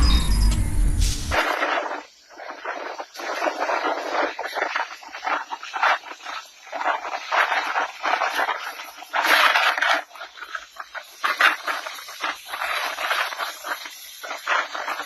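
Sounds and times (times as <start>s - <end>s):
storm wind gusting: 0.0s - 2.0s.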